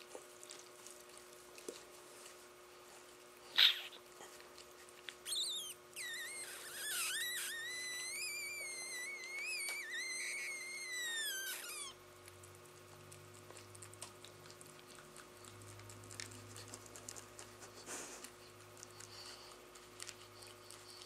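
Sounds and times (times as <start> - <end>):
faint clicks and patter: 0.0 - 5.6, 12.2 - 21.0
dog whining: 3.5 - 4.1, 5.2 - 12.0.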